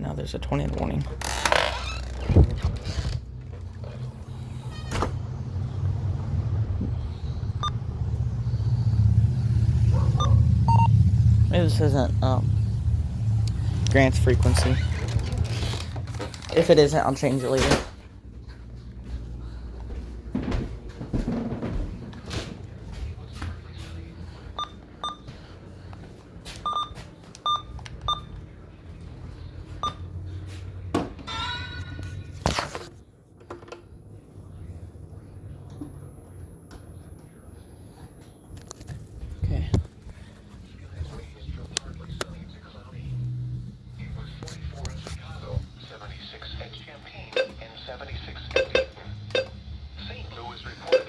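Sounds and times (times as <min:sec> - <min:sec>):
steady low rumble: 0:01.9 - 0:16.5, 0:37.3 - 0:47.0
brief tone: 0:10.2 - 0:11.0.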